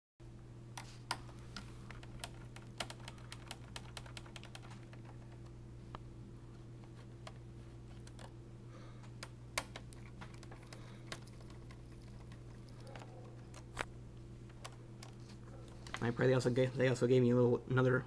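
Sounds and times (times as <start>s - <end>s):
steady low hum: 0.2s - 18.0s.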